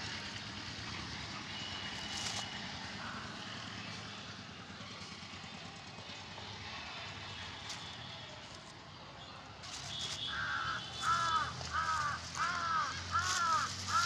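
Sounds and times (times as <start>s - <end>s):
crow cawing: 3.0s - 3.6s, 10.1s - 14.0s.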